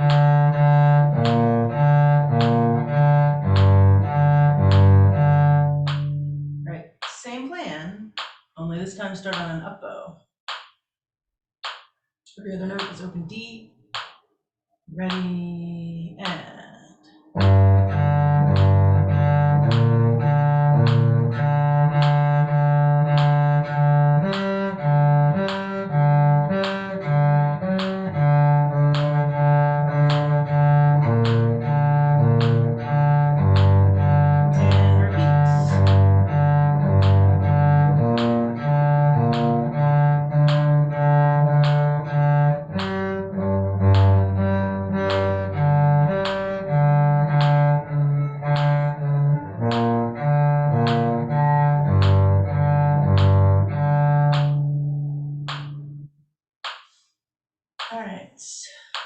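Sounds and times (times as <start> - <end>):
cello bowing arpeggio: 0.0 - 6.6, 17.2 - 56.1.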